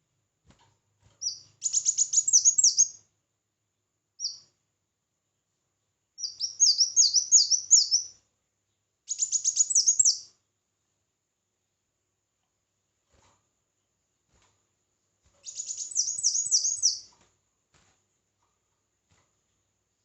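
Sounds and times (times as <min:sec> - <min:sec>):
sunbird singing: 0:01.2 - 0:03.0, 0:04.2 - 0:04.5, 0:06.2 - 0:08.2, 0:09.1 - 0:10.3, 0:15.4 - 0:17.1.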